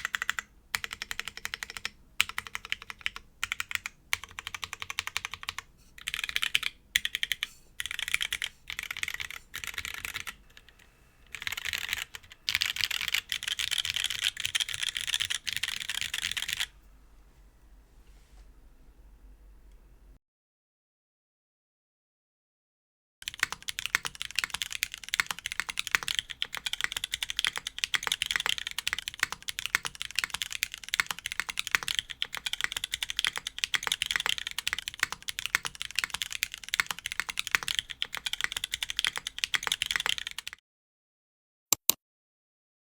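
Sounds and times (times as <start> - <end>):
mechanical keyboard typing: 0.0 - 16.7, 23.2 - 40.6.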